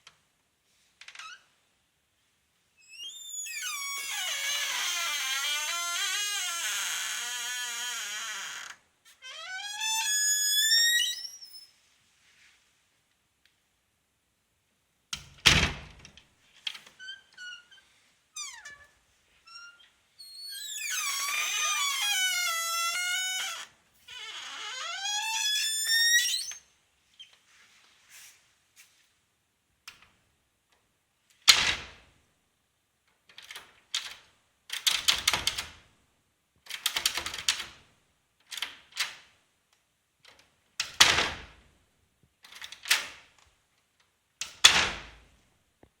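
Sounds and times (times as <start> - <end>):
door hinge creaking: 2.8 - 11.7, 16.7 - 27.4.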